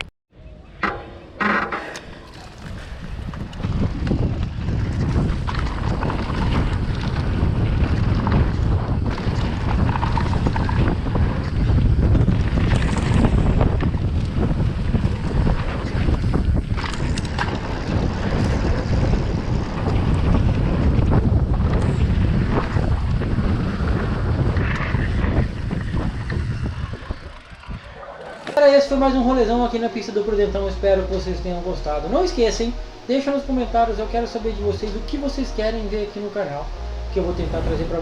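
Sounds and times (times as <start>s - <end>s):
wind buffeting microphone: 0.0s - 38.0s
bike knocks and rattles: 0.8s - 11.7s.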